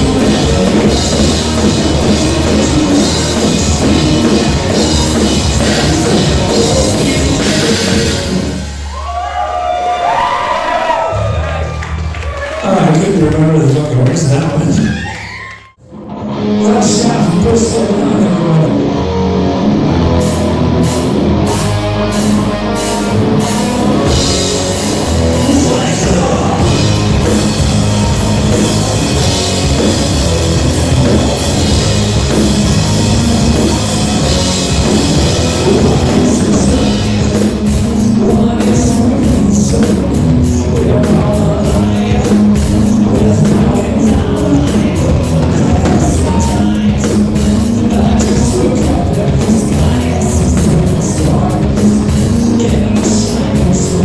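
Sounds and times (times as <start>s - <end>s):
person singing: 0.0s - 8.5s, 22.5s - 54.0s
electric guitar: 0.0s - 9.0s, 15.8s - 54.0s
drum kit: 0.0s - 15.0s, 16.4s - 54.0s
rock band playing: 0.0s - 15.0s, 15.9s - 54.0s.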